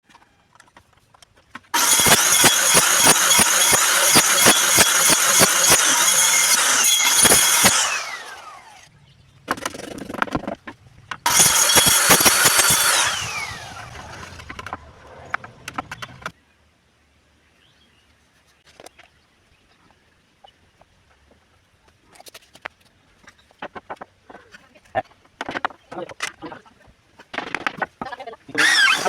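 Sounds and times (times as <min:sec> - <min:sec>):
power tool motor whining: 0:01.8 - 0:08.9, 0:11.3 - 0:14.8, 0:28.6 - 0:29.0.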